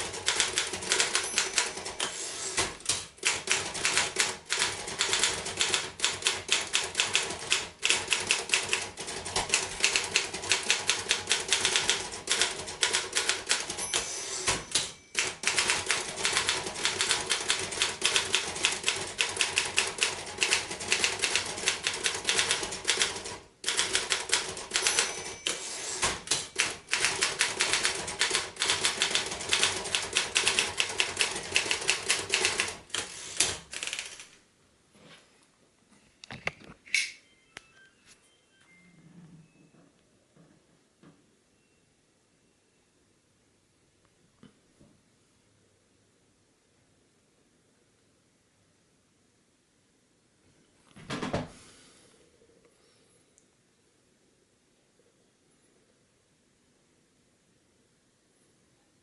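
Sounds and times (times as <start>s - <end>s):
manual typewriter typing: 0.0s - 34.4s.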